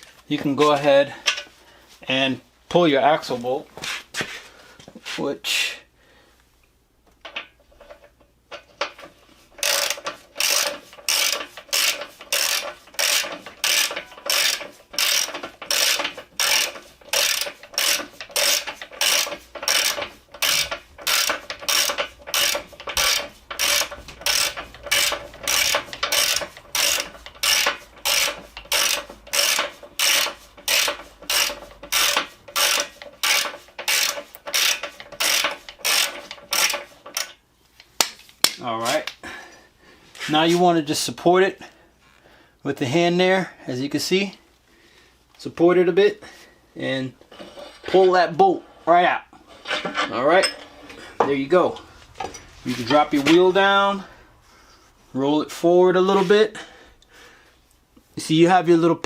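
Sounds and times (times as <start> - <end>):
ratchet wrench clicking: 9.6 - 37.4.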